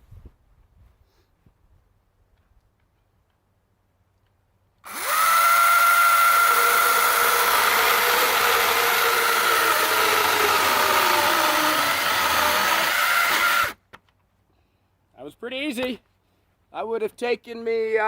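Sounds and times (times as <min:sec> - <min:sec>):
electric chainsaw whining: 0:04.8 - 0:13.8.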